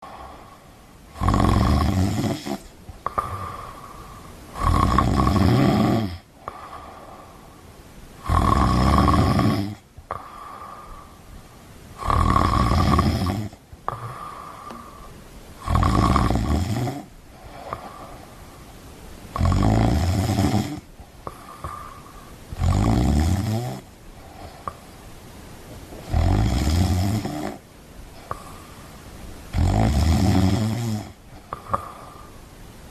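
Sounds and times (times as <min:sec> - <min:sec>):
loud rattling snore: 0:01.1 - 0:03.6, 0:04.6 - 0:06.2, 0:08.2 - 0:09.8, 0:12.0 - 0:14.2, 0:15.6 - 0:17.1, 0:19.3 - 0:20.8, 0:22.6 - 0:23.9, 0:26.0 - 0:27.6, 0:29.5 - 0:32.1.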